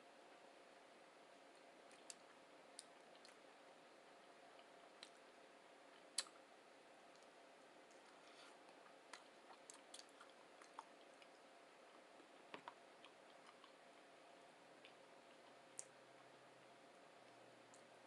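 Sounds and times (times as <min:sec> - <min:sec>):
faint chewing: 0:01.5 - 0:03.5, 0:04.5 - 0:05.3, 0:07.1 - 0:18.0
soft mouth clicks and smacks: 0:01.6 - 0:03.4, 0:04.6 - 0:05.2, 0:06.0 - 0:06.4, 0:07.9 - 0:13.8, 0:14.8 - 0:16.0.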